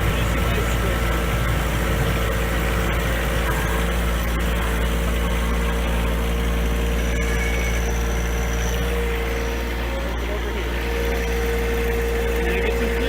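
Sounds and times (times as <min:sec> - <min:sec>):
tractor diesel engine running: 0:00.0 - 0:13.0.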